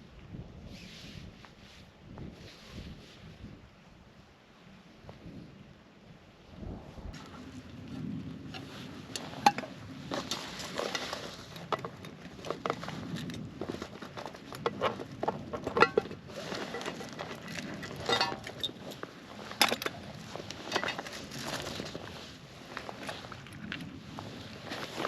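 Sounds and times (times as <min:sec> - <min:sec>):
metal tent poles clattering: 0:08.6 - 0:21.8.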